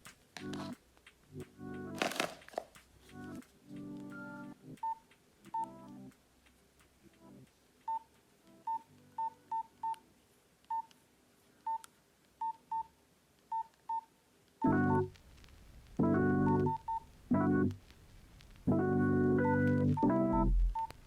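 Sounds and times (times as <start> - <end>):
phone keypad beeps: 4.8 - 5.7, 16.5 - 17.0, 20.7 - 21.0.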